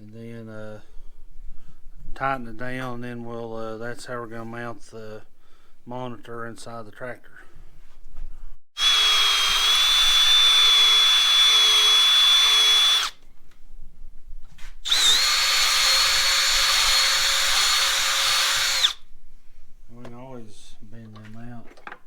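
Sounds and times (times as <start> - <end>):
power drill whining: 8.8 - 13.2, 14.8 - 19.0.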